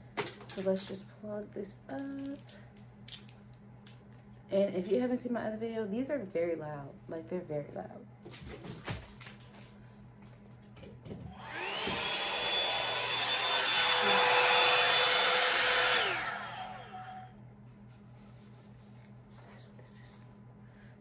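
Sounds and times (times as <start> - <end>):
hot air brush motor whining: 11.3 - 17.3.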